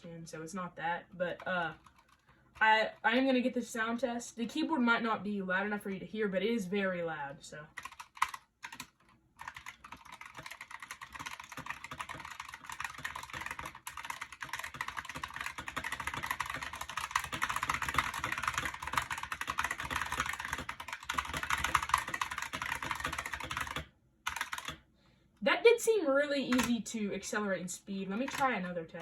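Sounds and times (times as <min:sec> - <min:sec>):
fast keyboard typing: 0:01.1 - 0:03.4, 0:07.6 - 0:24.8, 0:26.4 - 0:27.3, 0:28.0 - 0:29.0.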